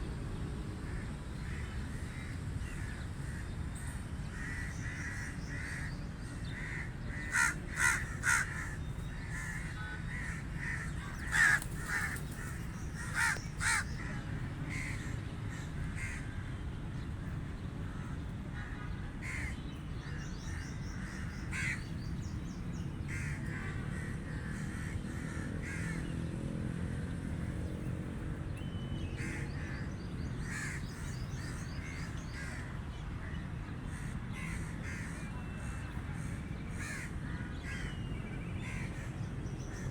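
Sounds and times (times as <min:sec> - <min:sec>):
crows cawing: 0:04.3 - 0:05.9, 0:06.6 - 0:16.3, 0:18.0 - 0:19.6, 0:20.5 - 0:21.9, 0:23.1 - 0:26.1, 0:29.2 - 0:29.7, 0:30.4 - 0:32.7, 0:33.9 - 0:35.2, 0:36.2 - 0:37.8.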